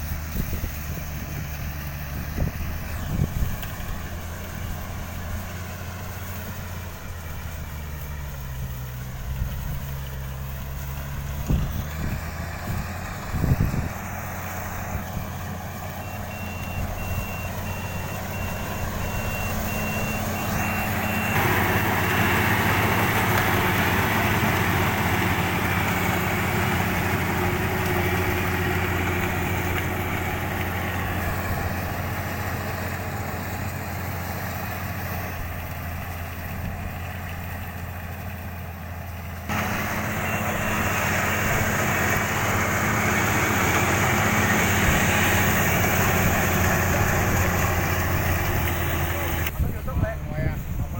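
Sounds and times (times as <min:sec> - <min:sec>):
diesel engine running: 0:00.0 - 0:50.9
rushing machine noise: 0:16.2 - 0:33.5.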